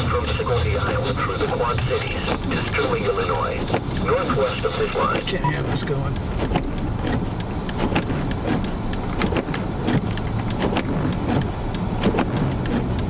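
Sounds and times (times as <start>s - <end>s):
car driving rumble: 0.0s - 13.0s
small ticks and clicks: 6.1s - 13.0s.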